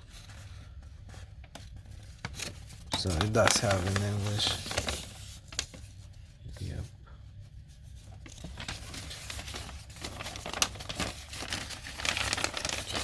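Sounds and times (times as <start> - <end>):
paper rustling and crinkling: 0.0 - 6.8, 7.4 - 13.0.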